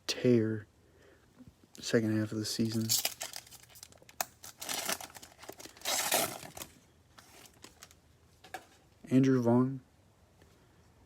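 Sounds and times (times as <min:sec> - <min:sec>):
trading cards rustling: 0:02.6 - 0:08.8.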